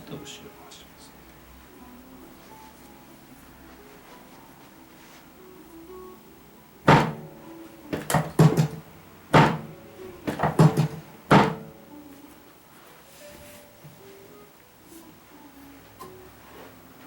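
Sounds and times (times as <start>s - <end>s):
soft background music: 0.0s - 17.0s
sharp thuds and knocks: 6.9s - 7.3s, 8.0s - 8.8s, 9.4s - 11.7s.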